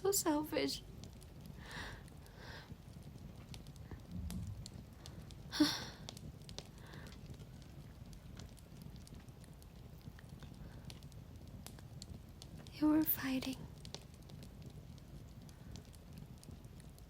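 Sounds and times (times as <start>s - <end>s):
fire crackling: 0.0s - 17.0s
woman breathing softly: 1.6s - 2.8s, 5.0s - 6.2s, 6.8s - 7.2s
low rumble: 3.8s - 5.3s.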